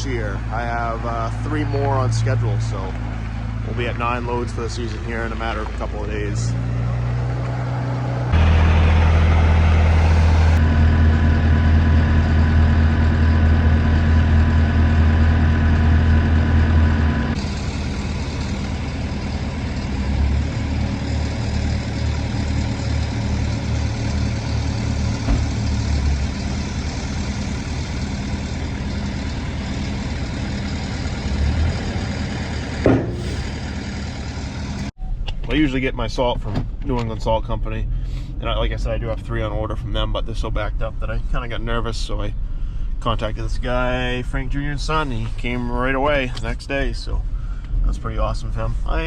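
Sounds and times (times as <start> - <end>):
truck engine whining and idling: 0.0 - 35.4
brief knock: 32.9 - 33.6.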